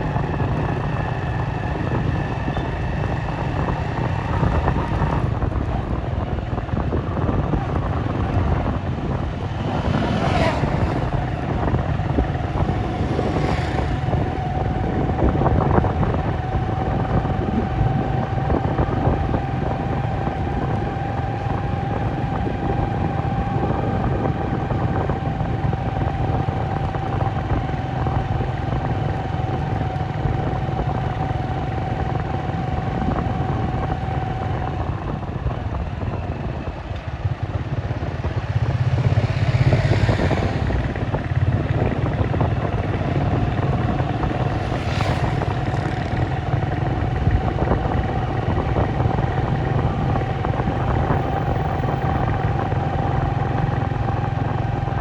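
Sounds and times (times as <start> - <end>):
constant whine: 0.0 - 55.0
vehicle engine and road noise: 0.0 - 55.0
vehicle passing close: 7.2 - 15.4, 37.3 - 48.1.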